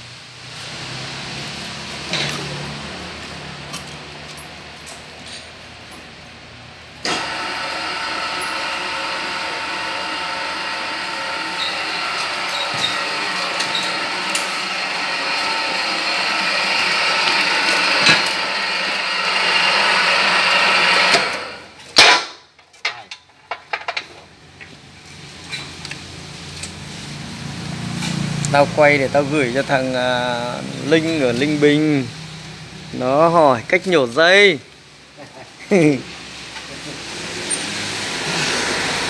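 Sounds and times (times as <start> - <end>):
power tool motor whining: 7.1 - 21.7
loud sharp clack: 21.9 - 22.5.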